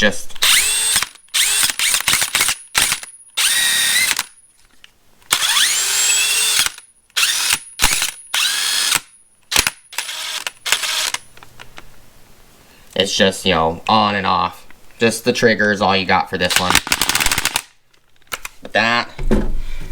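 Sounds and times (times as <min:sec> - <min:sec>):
impact wrench motor whine: 0:00.4 - 0:04.3, 0:05.3 - 0:11.3.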